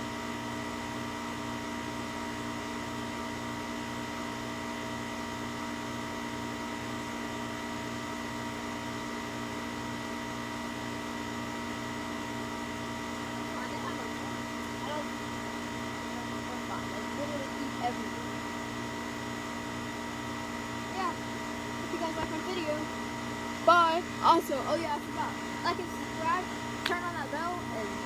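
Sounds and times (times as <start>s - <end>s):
mechanical hum with fixed tones: 0.0s - 28.0s.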